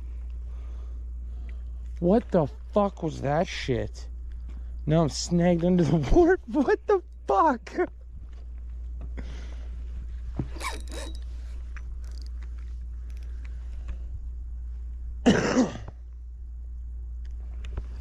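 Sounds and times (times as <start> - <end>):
steady low rumble: 0.0 - 18.0
man coughing outburst: 15.2 - 15.9.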